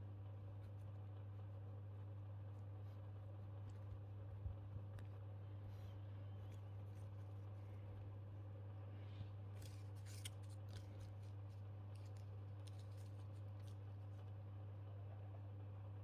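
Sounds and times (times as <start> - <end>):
steady low hum: 0.0 - 16.0
faint clicks and rustles: 9.2 - 14.5.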